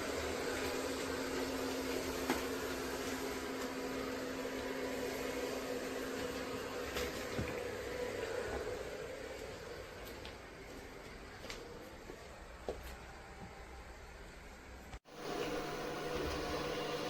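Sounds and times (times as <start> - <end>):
robot vacuum motor hum: 15.1 - 17.0.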